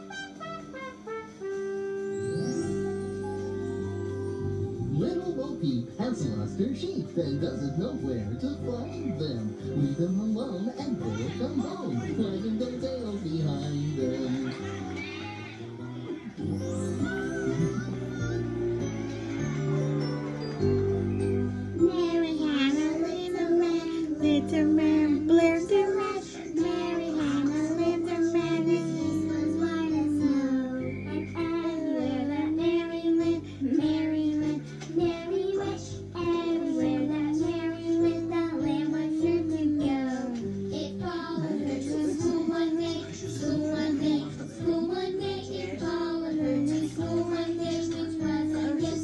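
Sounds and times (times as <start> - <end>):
child-like voice singing: 21.8 - 49.0.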